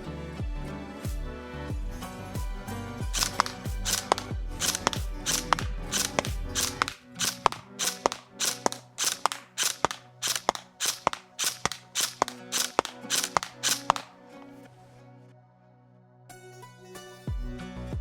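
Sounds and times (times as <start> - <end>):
background music: 0.0 - 18.0
airsoft gun single shots: 3.2 - 14.2.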